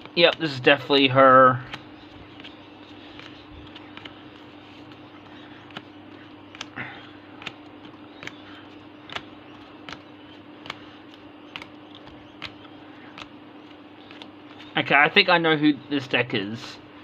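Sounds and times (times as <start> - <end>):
low electrical hum: 0.0 - 17.0
cards flipping with clicks: 1.6 - 14.7.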